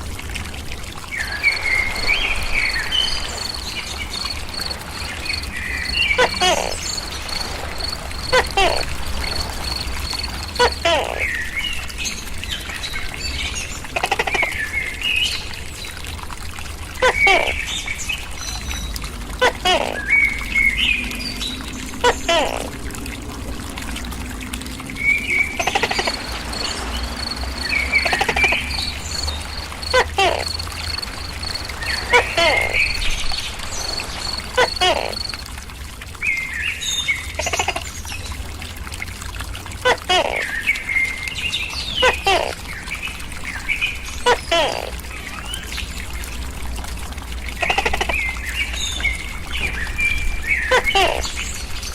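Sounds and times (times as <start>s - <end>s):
cricket chirping: 6.4s - 10.9s.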